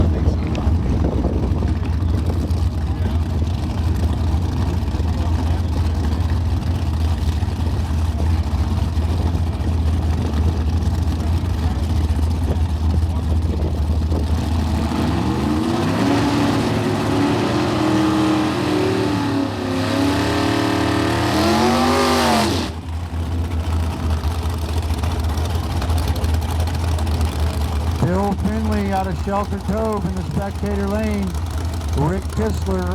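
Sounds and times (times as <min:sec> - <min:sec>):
racing car engines idling: 0:00.0 - 0:32.9
engine revving: 0:12.9 - 0:32.9.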